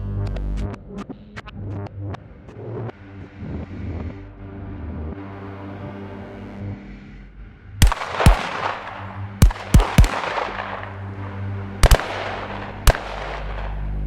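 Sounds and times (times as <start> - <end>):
steady low tones: 6.2 - 14.0
gunshots with reverberant tail: 7.8 - 14.0.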